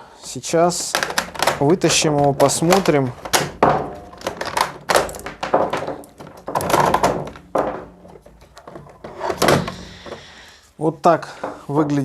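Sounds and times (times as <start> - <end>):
plastic rustling: 0.0 - 12.0
handling knocks: 0.2 - 10.5, 11.3 - 12.0.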